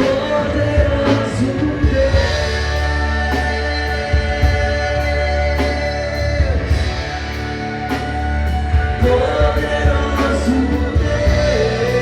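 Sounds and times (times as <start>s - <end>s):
live worship band: 0.0s - 12.0s
person singing: 0.0s - 12.0s.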